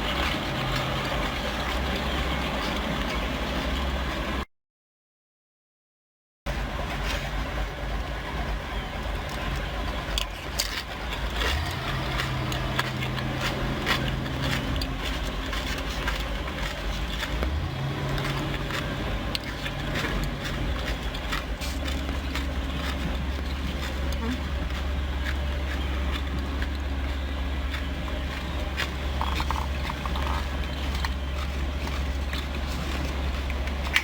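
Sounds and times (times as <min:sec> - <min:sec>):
car cabin rumble: 0:06.7 - 0:34.0
crunching corn chips: 0:10.2 - 0:34.0.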